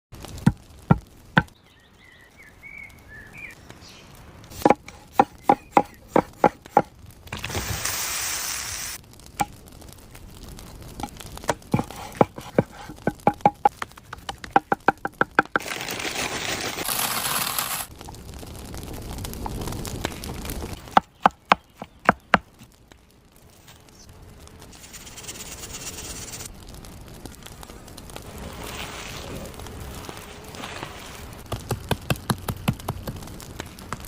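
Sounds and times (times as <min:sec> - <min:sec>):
steady hissing: 0:07.4 - 0:09.1, 0:23.4 - 0:34.0.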